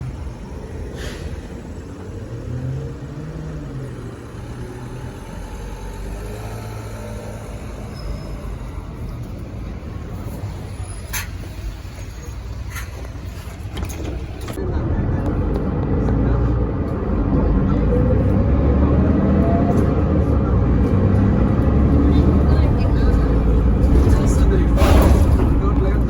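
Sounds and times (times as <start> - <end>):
bus engine humming: 0.0 - 26.0
short air hisses: 1.0 - 1.4.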